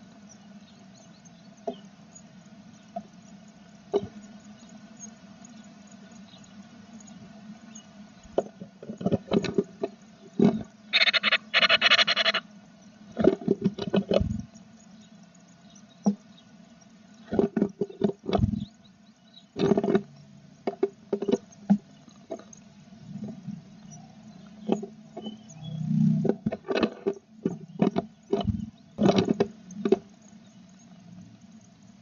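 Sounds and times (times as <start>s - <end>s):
birds scratching and knocking in nest: 8.2s - 12.4s, 13.1s - 14.5s, 17.2s - 18.7s, 19.6s - 22.6s, 26.2s - 30.1s
nestlings begging calls: 10.8s - 12.5s.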